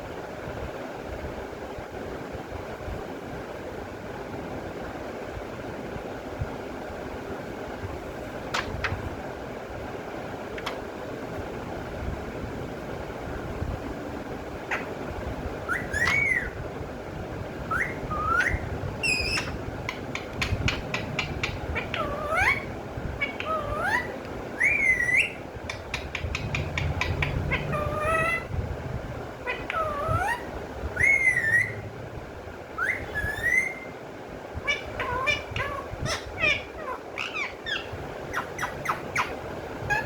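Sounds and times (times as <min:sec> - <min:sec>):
parrot whistled calls: 0:15.6 - 0:16.6, 0:17.7 - 0:20.0, 0:20.9 - 0:25.4, 0:26.1 - 0:28.5, 0:29.4 - 0:31.8, 0:32.8 - 0:34.0, 0:34.7 - 0:40.0
parrot clicking chatter: 0:25.7 - 0:28.4.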